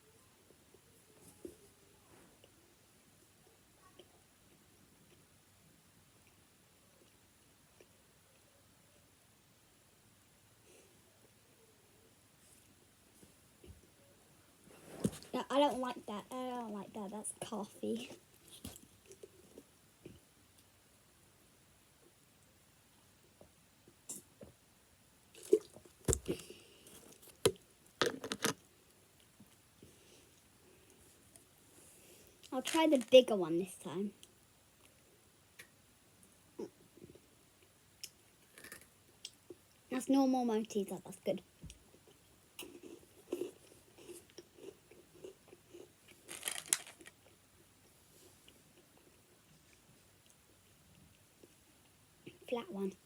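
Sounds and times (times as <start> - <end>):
person chewing crunchy chocolate: 25.4 - 28.5, 42.1 - 47.4.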